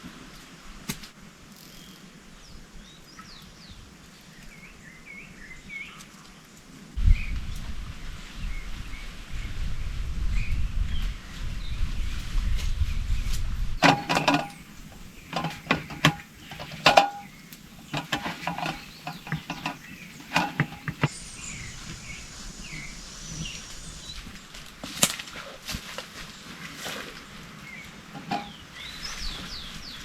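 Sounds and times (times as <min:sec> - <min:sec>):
sharp knocks and clinks: 0:13.8 - 0:21.2, 0:28.2 - 0:28.6
birds chirping: 0:13.8 - 0:25.3, 0:27.5 - 0:30.0
faint high hiss: 0:19.8 - 0:29.8.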